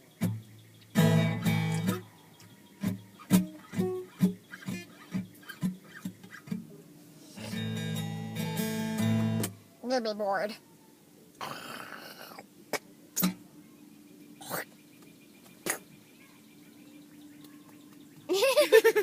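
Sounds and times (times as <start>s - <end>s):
acoustic guitar strums and notes: 0.0s - 9.6s, 12.7s - 13.5s.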